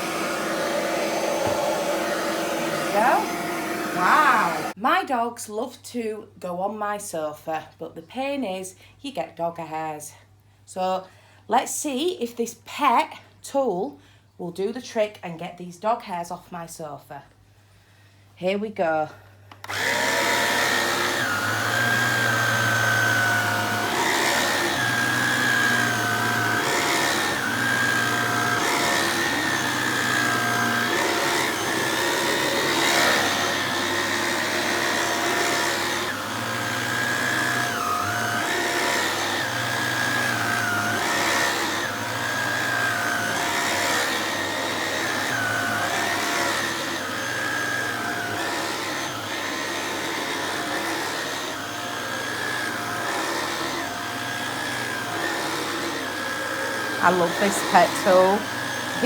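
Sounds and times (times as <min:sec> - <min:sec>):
stick vacuum motor whining: 0:00.0 - 0:04.8, 0:19.5 - 0:59.0.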